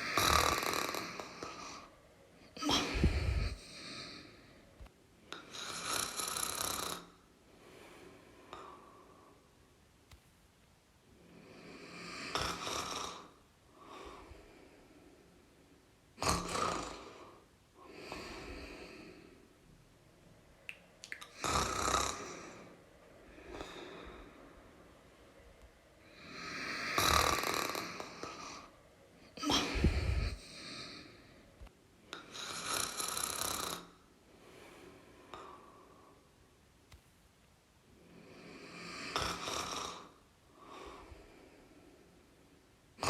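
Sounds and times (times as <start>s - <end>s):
person snoring: 0.0s - 1.9s, 2.6s - 4.3s, 5.4s - 7.2s, 11.4s - 13.4s, 16.2s - 19.2s, 21.3s - 22.7s, 26.1s - 28.7s, 29.4s - 31.2s, 32.2s - 34.0s, 38.3s - 41.0s
soft breaths: 0.0s - 37.0s, 37.8s - 43.0s.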